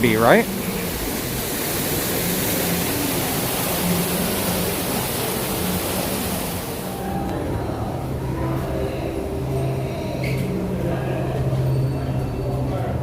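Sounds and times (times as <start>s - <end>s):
waterfall rushing: 0.0s - 9.4s.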